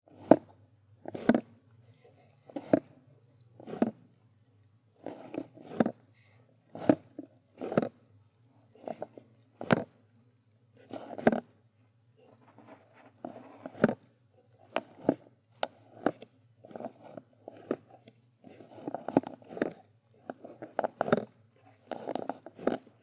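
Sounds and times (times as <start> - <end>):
faint steady hum: 0.1 - 23.0.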